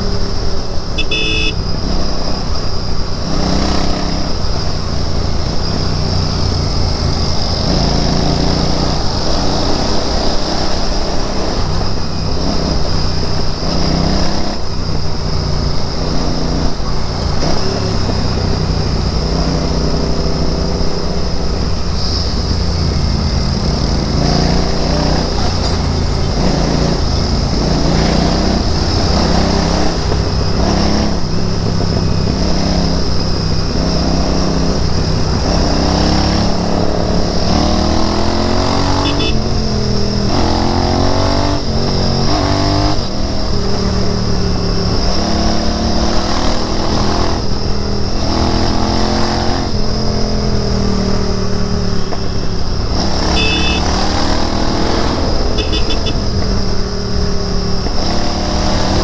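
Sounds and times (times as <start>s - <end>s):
motorcycle engine revving: 1.0s - 59.0s.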